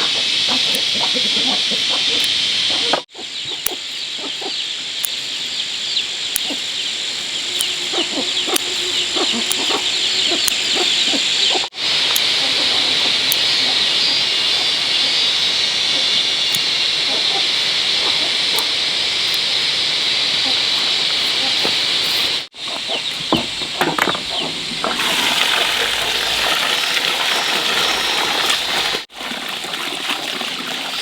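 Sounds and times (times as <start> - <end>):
chorus of high chirps: 1.7 - 19.4.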